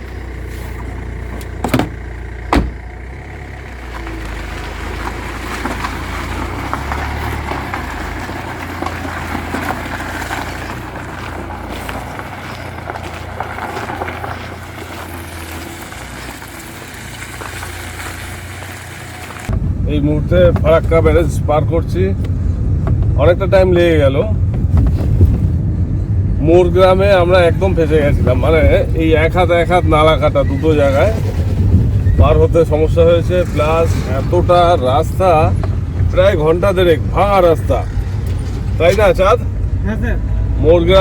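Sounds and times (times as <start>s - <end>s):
car engine and tyre rumble: 0.0s - 41.0s
sharp knocks: 1.6s - 2.8s.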